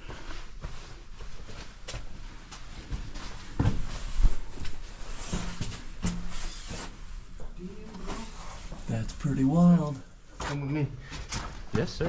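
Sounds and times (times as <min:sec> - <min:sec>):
footsteps on rock and sand: 0:00.0 - 0:06.0.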